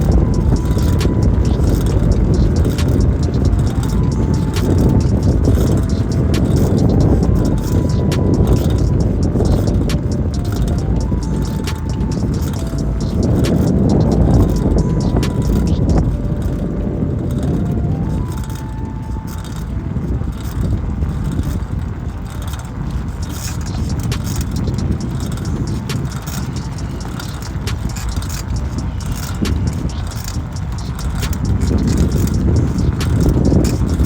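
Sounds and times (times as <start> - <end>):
bicycle rattling clicks: 0.0 - 34.0
rolling rumble: 0.0 - 34.0
wind buffeting: 0.0 - 34.0.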